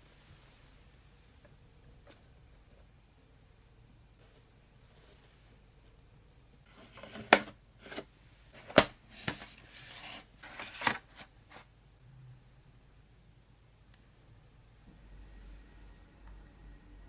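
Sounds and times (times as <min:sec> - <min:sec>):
rustling: 0:04.2 - 0:06.0.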